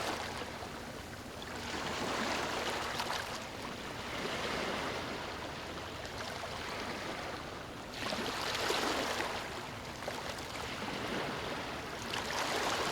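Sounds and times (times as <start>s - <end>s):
rushing water: 0.0s - 7.2s, 7.9s - 12.9s.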